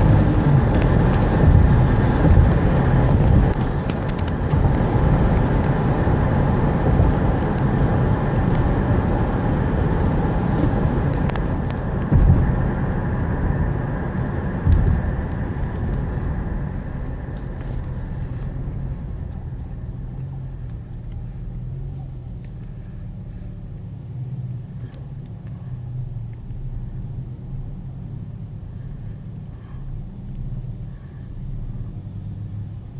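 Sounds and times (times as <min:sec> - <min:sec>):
car driving on road: 0:00.0 - 0:32.9
car jolts: 0:11.6 - 0:20.0.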